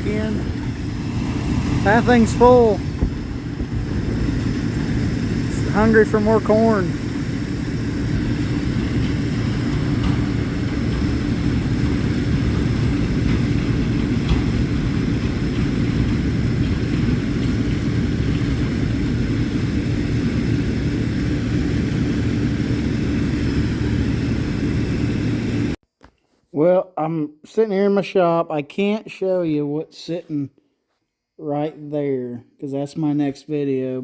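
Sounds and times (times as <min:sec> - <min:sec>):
combine harvester engine drone: 0:00.0 - 0:25.8.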